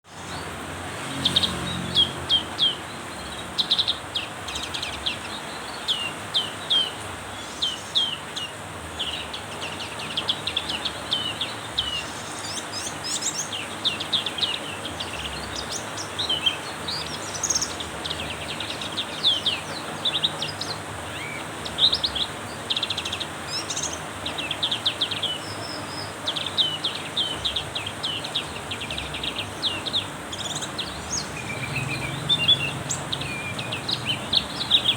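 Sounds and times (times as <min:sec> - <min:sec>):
bird chirping and twittering: 0:00.1 - 0:34.9.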